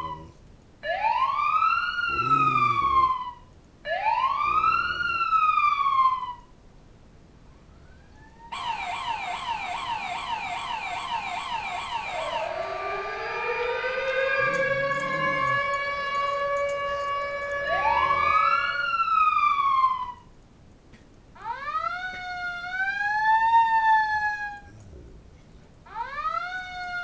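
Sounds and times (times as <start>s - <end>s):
dog howling: 0.0s - 0.4s, 2.1s - 3.4s, 10.8s - 20.1s
siren yelping: 0.0s - 6.5s, 7.6s - 20.3s, 21.4s - 24.8s, 25.8s - 27.0s
high wailing siren: 0.0s - 6.6s, 7.4s - 20.4s, 21.4s - 24.8s, 25.8s - 27.0s.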